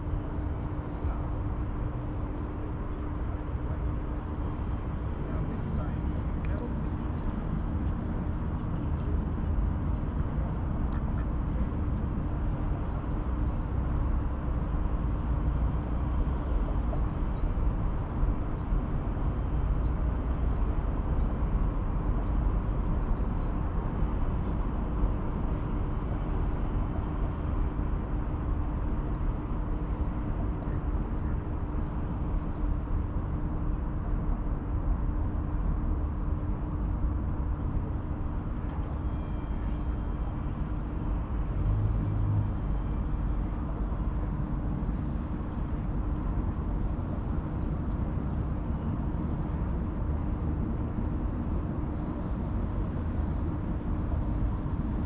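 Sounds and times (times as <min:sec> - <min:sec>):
steady hum: 0:00.0 - 0:55.0
low rumble: 0:03.9 - 0:22.0.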